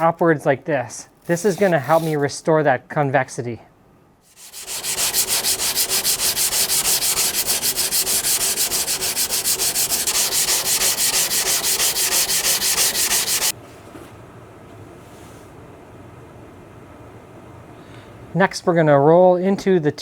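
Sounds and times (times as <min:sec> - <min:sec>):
knife grinding on whetstone: 0:01.2 - 0:02.2, 0:04.3 - 0:13.5.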